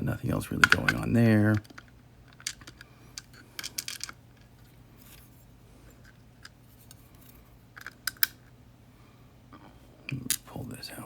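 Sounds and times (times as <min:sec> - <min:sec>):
small metal clicks of lock parts: 0:01.6 - 0:04.5, 0:07.8 - 0:08.5.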